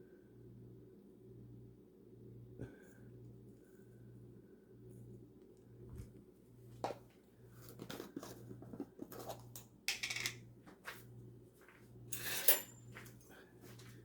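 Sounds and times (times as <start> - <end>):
faint low hum: 0.0 - 14.0
containers clicking: 7.7 - 10.4.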